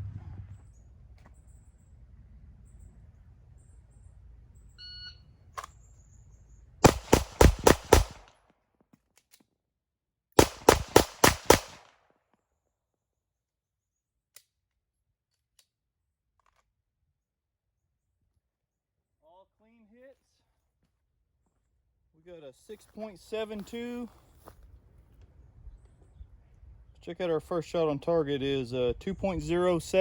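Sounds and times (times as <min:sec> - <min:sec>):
pistol shots: 0:06.8 - 0:08.3, 0:10.4 - 0:12.0.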